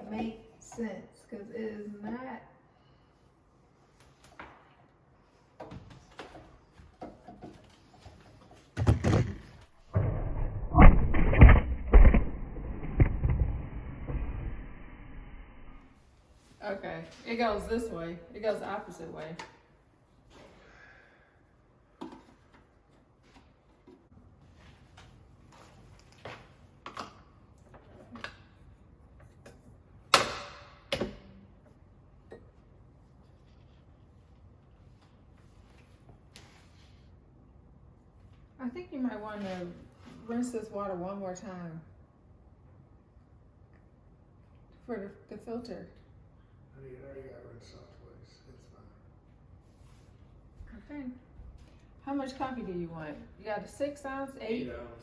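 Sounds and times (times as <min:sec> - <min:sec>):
objects knocking and clattering: 0:05.6 - 0:13.6
heavy thumps and thuds: 0:08.8 - 0:14.2.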